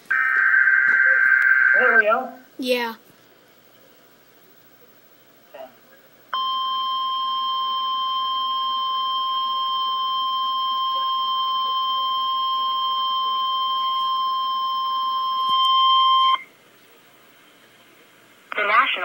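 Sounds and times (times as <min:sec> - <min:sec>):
high electronic alarm tone: 0:00.1 - 0:02.1, 0:06.4 - 0:16.4.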